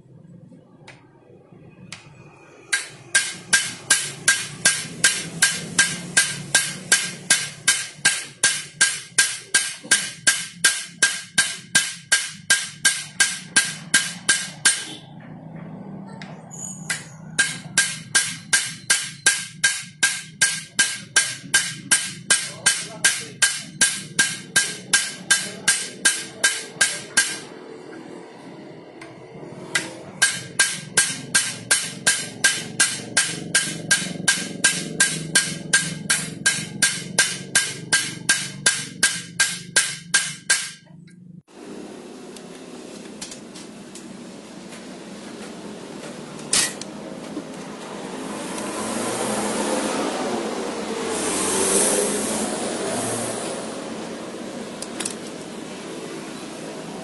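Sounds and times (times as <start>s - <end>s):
hammer striking metal: 1.9s - 15.9s, 16.8s - 28.0s, 29.4s - 41.1s, 46.5s - 46.9s.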